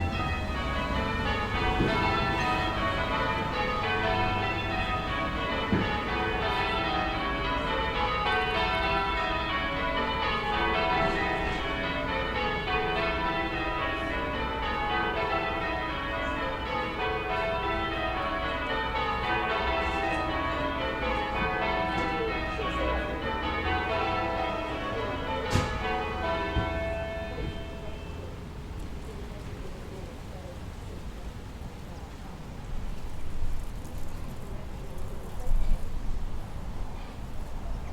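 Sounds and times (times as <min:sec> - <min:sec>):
distant church bells ringing: 0:00.0 - 0:28.7
low town background rumble: 0:00.0 - 0:37.9.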